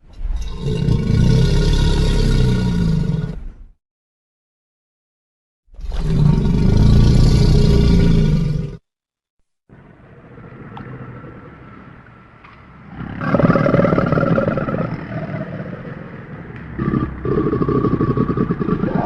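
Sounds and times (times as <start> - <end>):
monster growling and roaring: 0.2 - 3.4, 5.8 - 8.8, 12.9 - 19.0.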